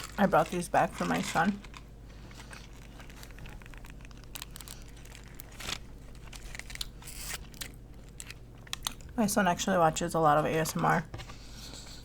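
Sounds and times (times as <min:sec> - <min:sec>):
plastic packaging crinkling: 0:00.0 - 0:09.2.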